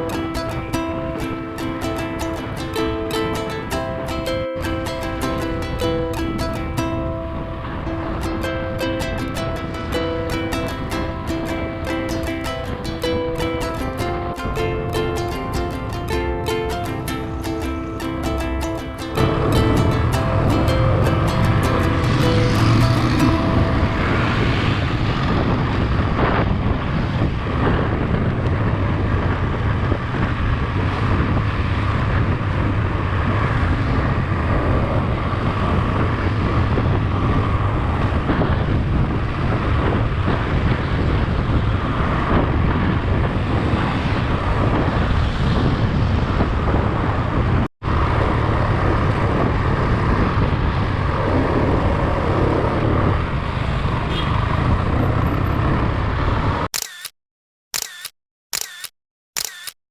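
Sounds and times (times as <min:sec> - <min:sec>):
wind rush on microphone: 0:22.7 - 0:56.6.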